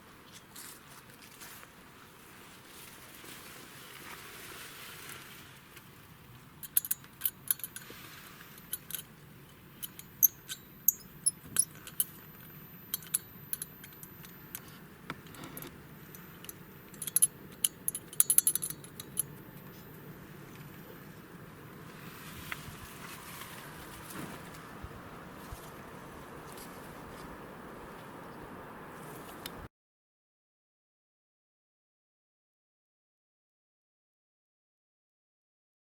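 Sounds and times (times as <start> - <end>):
low steady hum: 5.8 - 29.7
car metallic rattle: 6.6 - 7.9, 8.6 - 19.8.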